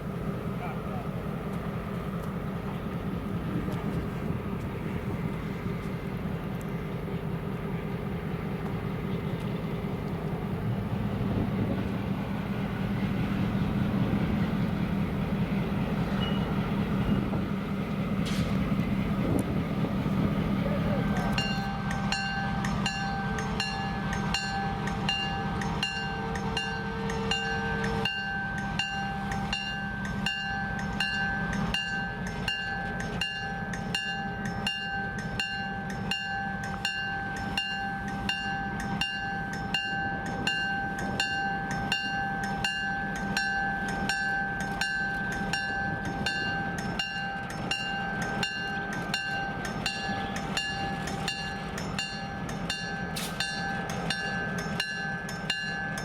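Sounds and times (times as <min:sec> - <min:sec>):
diesel locomotive rumbling: 0:00.0 - 0:56.0
steady ringing tone: 0:21.3 - 0:56.0.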